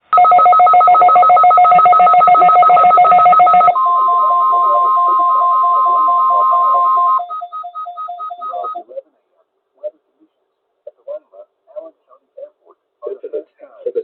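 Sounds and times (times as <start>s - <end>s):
rapid two-pitch alarm beeping: 0.1s - 8.8s
steady alarm tone: 0.1s - 8.8s.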